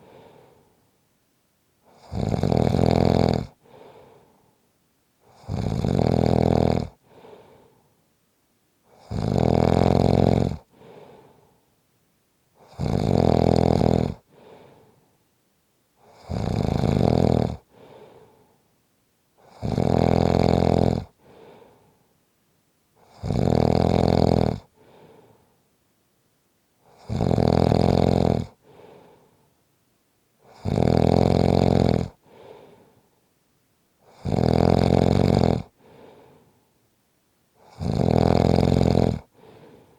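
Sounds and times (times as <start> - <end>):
faint breath out: 0.0 - 0.9, 3.6 - 4.7, 7.0 - 8.0, 10.7 - 11.8, 14.2 - 15.2, 17.7 - 18.7, 21.2 - 22.2, 24.7 - 25.6, 28.5 - 29.6, 32.1 - 33.3, 35.7 - 36.8, 39.2 - 39.9
person snoring loudly: 1.9 - 3.6, 5.3 - 7.0, 8.9 - 10.7, 12.6 - 14.2, 16.0 - 17.6, 19.4 - 21.2, 23.0 - 24.7, 26.9 - 28.6, 30.5 - 32.2, 34.1 - 35.7, 37.6 - 39.4.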